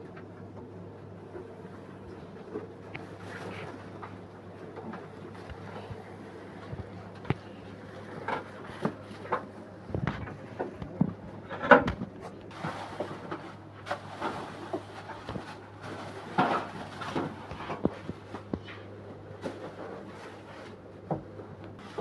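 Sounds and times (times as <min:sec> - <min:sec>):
steady low hum: 0:00.0 - 0:22.0
objects knocking and clattering: 0:08.1 - 0:12.4, 0:13.0 - 0:18.7.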